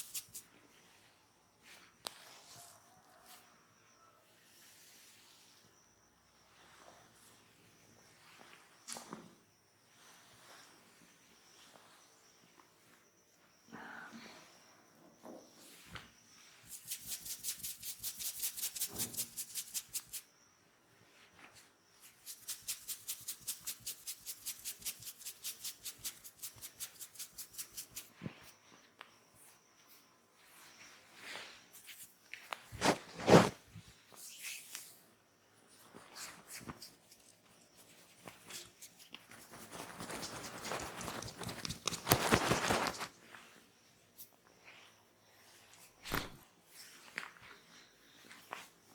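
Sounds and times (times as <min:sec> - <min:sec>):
hands rubbing oiled skin: 0:00.0 - 0:00.4, 0:16.7 - 0:20.2, 0:22.1 - 0:28.1, 0:38.2 - 0:43.2.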